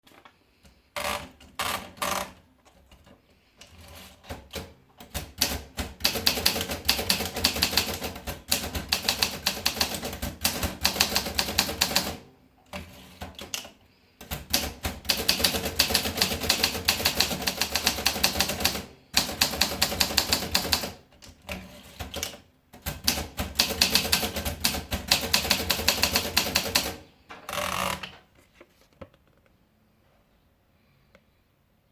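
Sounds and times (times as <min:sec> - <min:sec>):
typewriter keystrokes: 0:04.3 - 0:28.2.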